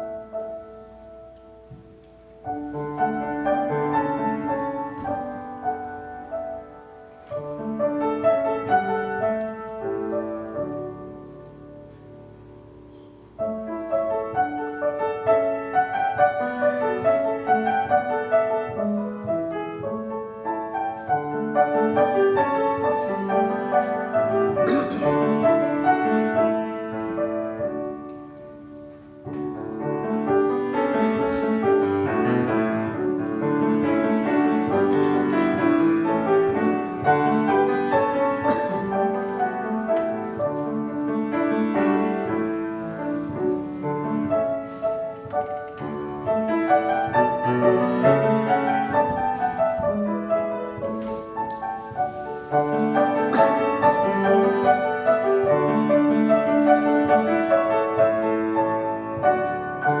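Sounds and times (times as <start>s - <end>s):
flowing piano music: 0.0s - 60.0s.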